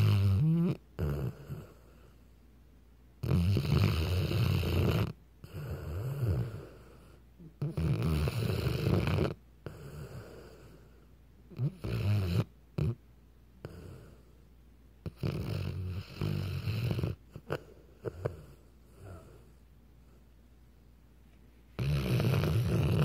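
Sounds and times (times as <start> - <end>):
dog snoring: 0.0 - 2.1, 3.2 - 13.0, 13.6 - 14.4, 15.0 - 19.6, 21.8 - 23.0
dog breathing softly: 16.6 - 20.4.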